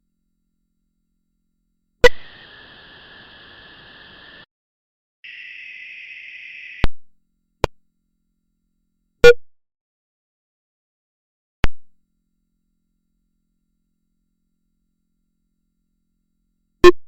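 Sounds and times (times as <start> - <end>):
steady hiss: 2.1 - 4.4.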